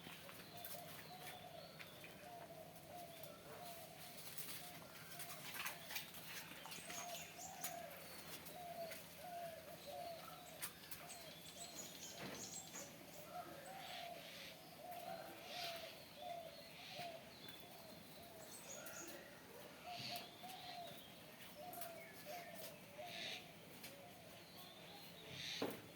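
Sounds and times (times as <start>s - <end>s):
small birds chirping: 0.0s - 25.9s
pigeons cooing: 6.8s - 12.3s, 13.1s - 24.4s.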